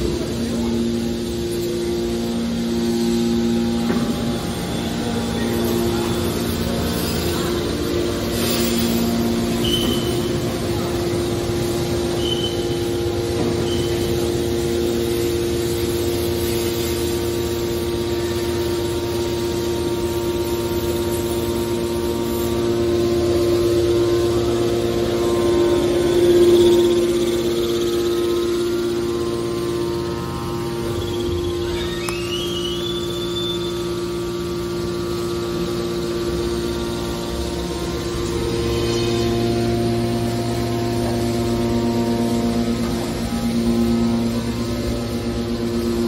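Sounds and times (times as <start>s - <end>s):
baler motor humming: 0.0s - 46.0s
high squeaks: 9.5s - 10.4s, 12.1s - 13.0s, 30.8s - 33.9s.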